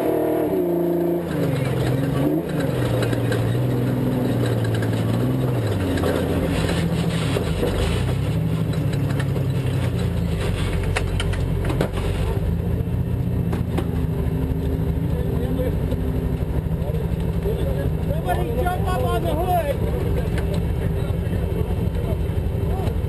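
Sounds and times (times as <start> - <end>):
race truck engine revving: 0.0 - 23.0
sharp knocks and rattles: 1.5 - 12.4.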